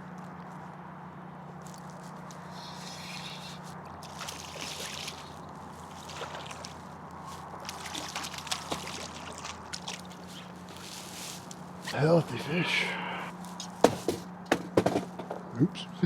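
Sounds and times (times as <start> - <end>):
water sloshing and dribbling: 1.5 - 11.9
steady low hum: 5.2 - 16.0.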